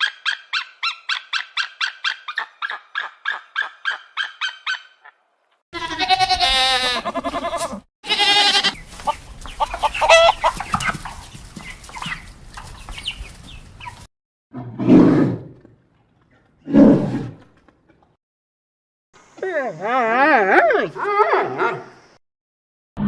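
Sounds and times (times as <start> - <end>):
goat bleating: 5.8 - 8.8
chickens clucking: 8.6 - 14.1.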